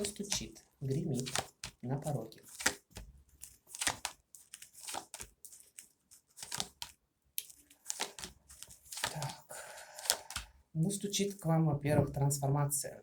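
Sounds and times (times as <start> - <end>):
cards rustling and snapping: 0.0 - 10.6.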